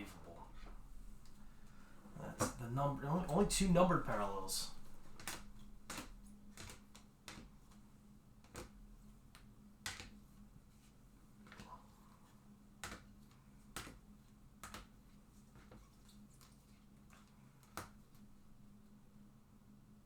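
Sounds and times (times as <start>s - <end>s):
faint steady hum: 0.0s - 20.0s
trading cards clicking on table: 5.1s - 7.6s, 8.4s - 8.8s, 9.4s - 10.2s, 12.8s - 14.0s, 14.6s - 16.6s.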